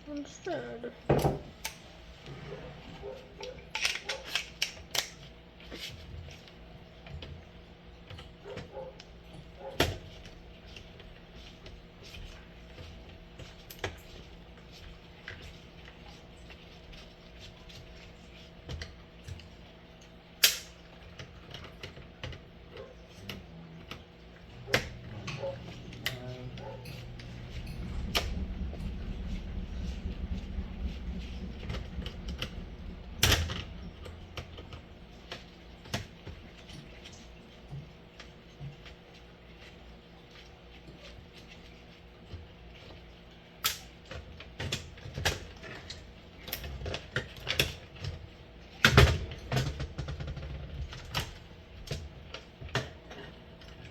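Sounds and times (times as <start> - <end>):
low hum: 23.1 - 36.8.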